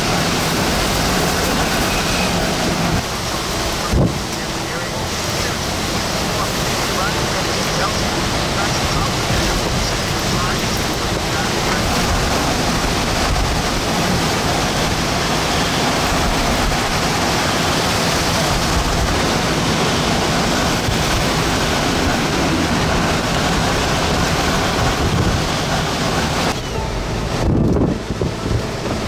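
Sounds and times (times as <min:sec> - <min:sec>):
loud wind rushing: 0:00.0 - 0:29.0
wind buffeting microphone: 0:07.3 - 0:29.0.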